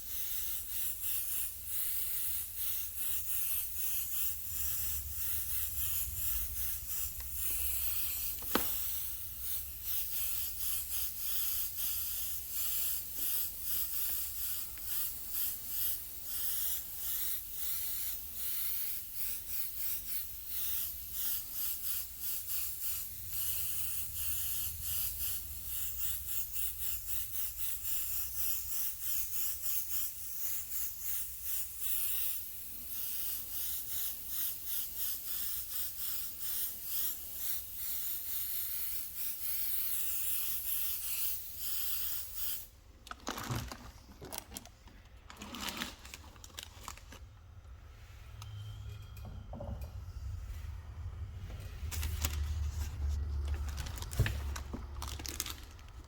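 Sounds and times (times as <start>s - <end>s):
airbrush spraying short hisses: 0.0s - 42.8s
low steady hum: 46.0s - 56.0s.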